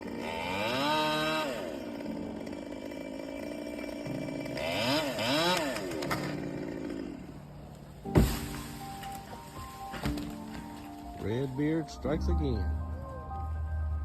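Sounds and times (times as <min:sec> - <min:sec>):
chainsaw revving: 0:00.0 - 0:10.4.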